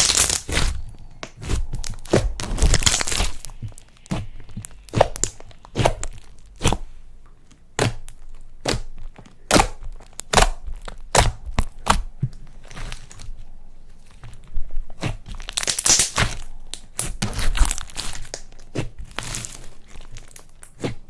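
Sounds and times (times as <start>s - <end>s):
slime clicking and popping: 0.0s - 6.8s, 7.8s - 12.1s, 15.0s - 18.9s
slime worked by hand: 0.0s - 21.0s.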